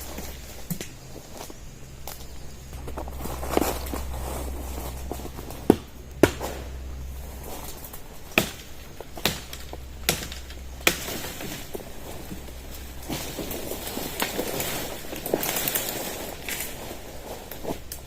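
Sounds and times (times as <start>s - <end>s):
low steady rumble: 0.0s - 18.0s
blade chopping small trees: 5.0s - 6.8s, 7.6s - 18.0s.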